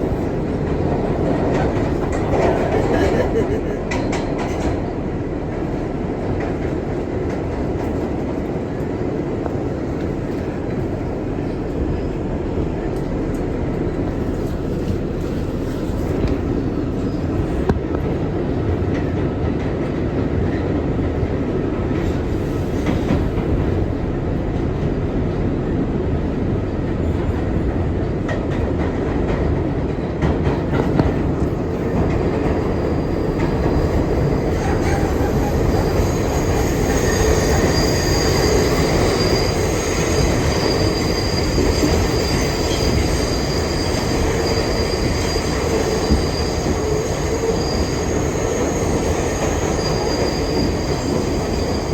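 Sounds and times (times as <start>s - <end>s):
rail clacks: 0.0s - 51.9s
subway train rumbling on track: 0.0s - 51.9s
high-pitched wheel squeal: 33.2s - 51.9s.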